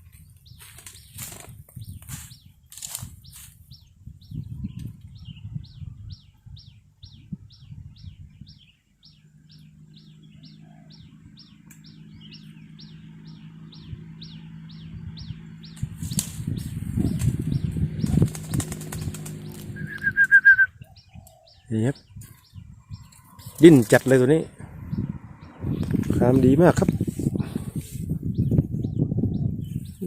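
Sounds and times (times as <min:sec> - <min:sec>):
bird wings flapping: 0:00.6 - 0:03.6, 0:15.8 - 0:20.3.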